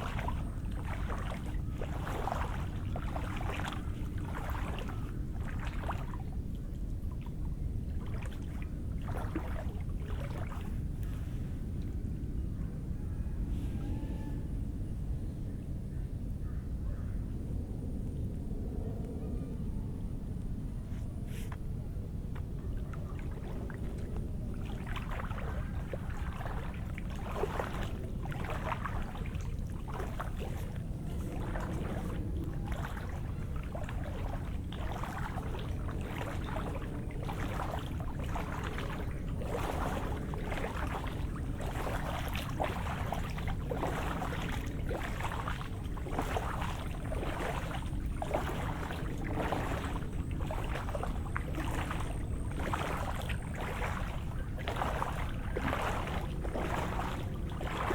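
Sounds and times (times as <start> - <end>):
footsteps on wet ground: 0.0 - 6.1, 23.2 - 57.9
steady low rumble: 0.0 - 13.8, 14.4 - 57.9.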